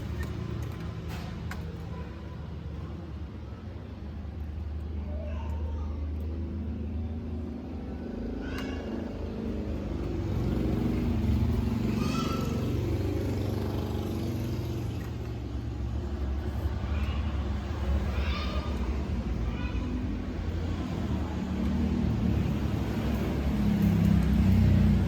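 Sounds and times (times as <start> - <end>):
vehicle engine running: 6.3 - 25.0.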